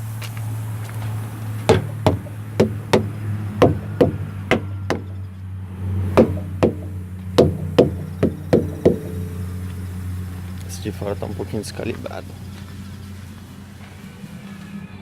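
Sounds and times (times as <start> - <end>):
low engine hum: 0.0 - 15.0
knocking on truck tyres: 1.6 - 5.3, 6.0 - 10.0.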